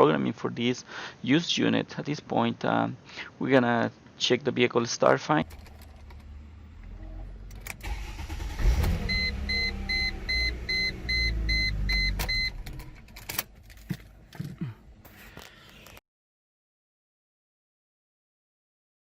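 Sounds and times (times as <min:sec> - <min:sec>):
car engine cranking and running: 0:05.4 - 0:14.4.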